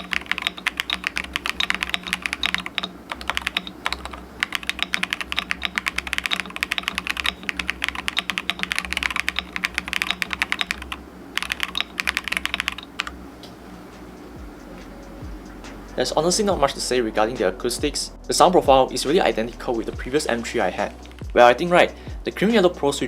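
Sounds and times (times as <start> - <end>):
fast mechanical keyboard typing: 0.0 - 13.2.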